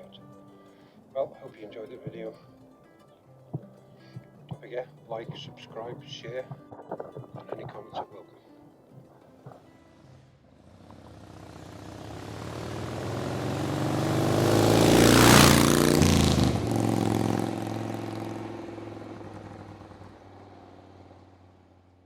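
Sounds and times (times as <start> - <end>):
vehicle engine passing by: 9.9 - 22.0.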